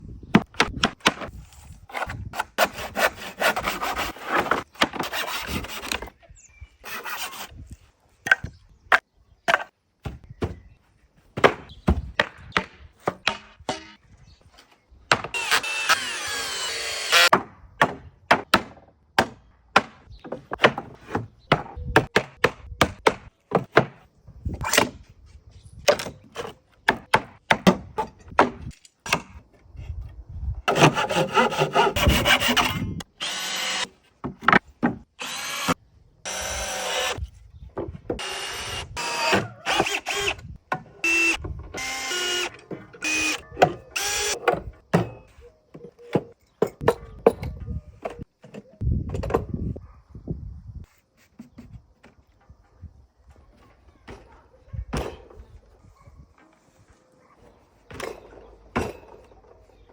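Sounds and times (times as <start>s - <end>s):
sawing wood: 1.4s - 6.2s, 6.8s - 7.7s, 15.1s - 17.4s, 30.6s - 37.3s, 38.1s - 44.7s.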